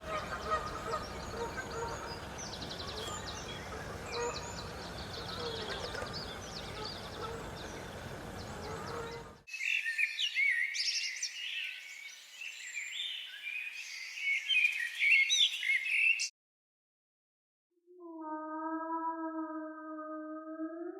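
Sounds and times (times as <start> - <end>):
outdoor background noise: 0.0 - 9.6
birds chirping and twittering: 0.0 - 16.3.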